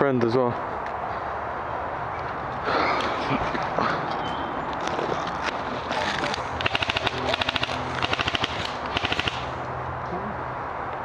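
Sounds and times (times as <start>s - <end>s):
airsoft gun rapid bursts: 6.6s - 9.5s.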